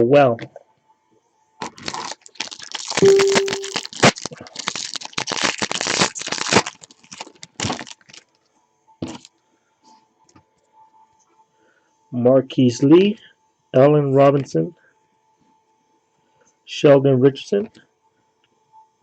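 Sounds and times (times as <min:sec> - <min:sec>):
foil wrapper crinkling: 0:01.6 - 0:08.4
short steady tone: 0:03.0 - 0:03.8.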